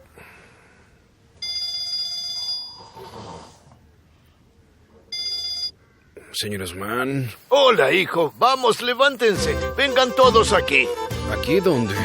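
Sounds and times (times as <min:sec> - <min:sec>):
phone ringing: 0:01.4 - 0:02.8, 0:05.1 - 0:05.8
man snoring: 0:02.7 - 0:03.8.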